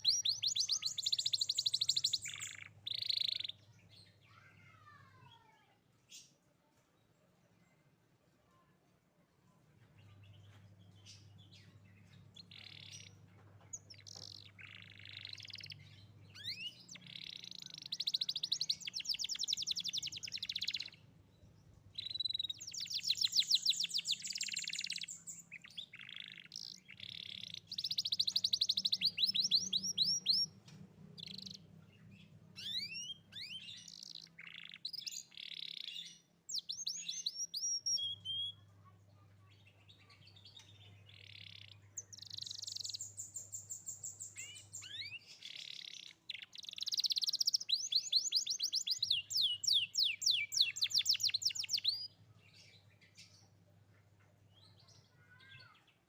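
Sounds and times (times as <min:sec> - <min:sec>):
canary singing: 0:00.0 - 0:04.0, 0:11.0 - 0:21.2, 0:21.8 - 0:53.6.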